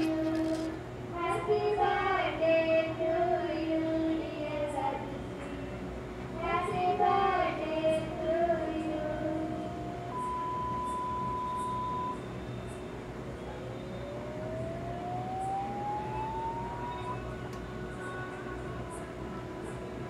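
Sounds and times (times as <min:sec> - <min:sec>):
steady pure beep: 0:07.9 - 0:17.5
rising tone sweep: 0:13.6 - 0:17.3.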